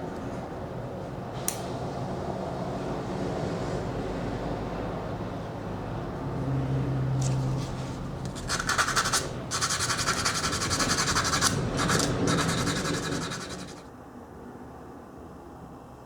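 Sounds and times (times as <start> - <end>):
scratchy rubbing on metal: 7.2 - 13.8.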